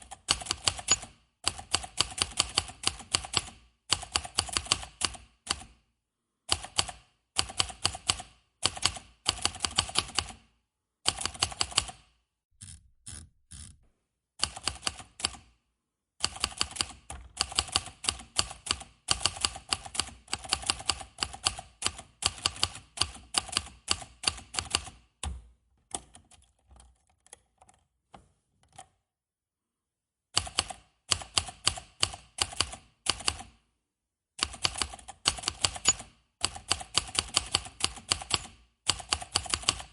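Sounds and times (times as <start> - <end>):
manual typewriter key strikes: 0.1 - 5.1, 34.5 - 39.9.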